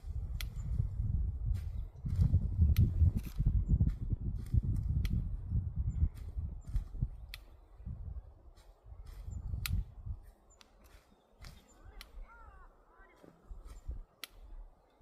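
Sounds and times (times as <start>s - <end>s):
wind buffeting microphone: 0.0s - 12.8s, 13.4s - 14.8s
sharp clicks and taps: 1.6s - 3.5s, 4.4s - 5.3s, 6.2s - 7.6s, 9.1s - 9.9s, 10.5s - 12.3s, 13.6s - 14.6s.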